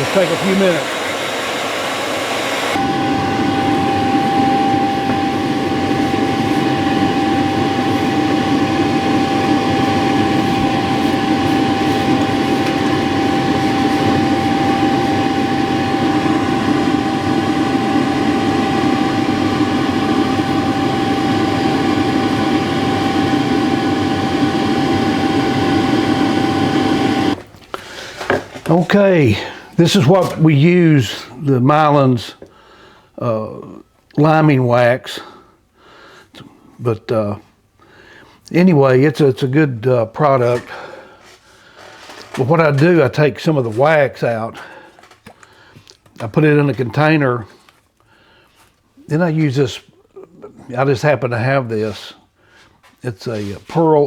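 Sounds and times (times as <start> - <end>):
hair dryer blowing: 0.0 - 27.5.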